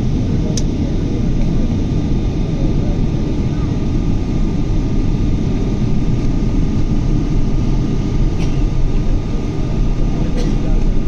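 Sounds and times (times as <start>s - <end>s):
jet engines rumbling: 0.0s - 11.0s.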